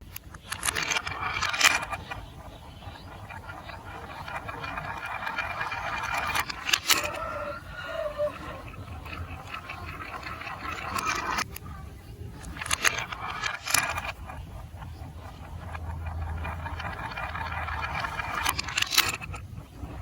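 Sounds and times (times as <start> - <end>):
sharp plastic clicks: 0.0 - 7.2.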